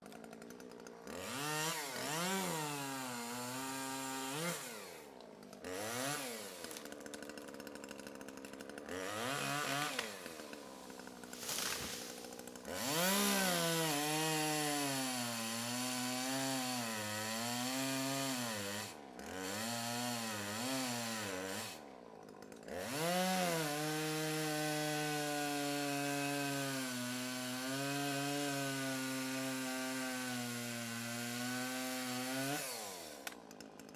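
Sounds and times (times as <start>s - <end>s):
chainsaw engine revving: 0.0s - 33.9s.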